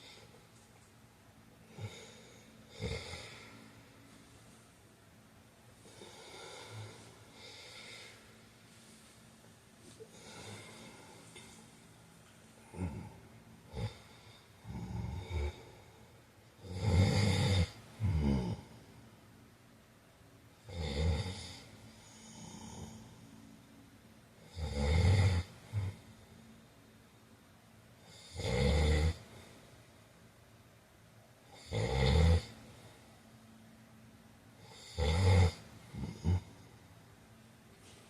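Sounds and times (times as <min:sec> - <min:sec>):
man snoring: 0:01.7 - 0:03.6, 0:05.9 - 0:08.1, 0:10.1 - 0:11.2, 0:12.6 - 0:15.8, 0:16.6 - 0:18.7, 0:20.7 - 0:23.1, 0:24.4 - 0:26.0, 0:28.0 - 0:29.2, 0:31.5 - 0:32.6, 0:34.6 - 0:36.7.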